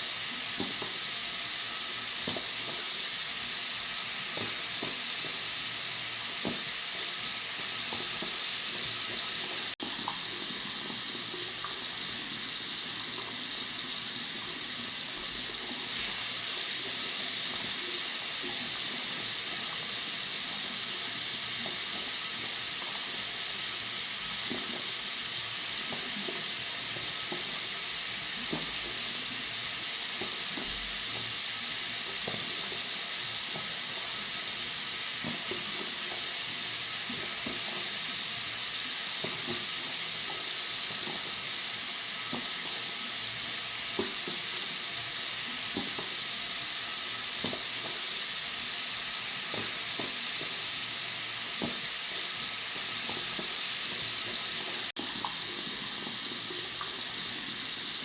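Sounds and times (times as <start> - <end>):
water running from sink tap: 0.0 - 58.0.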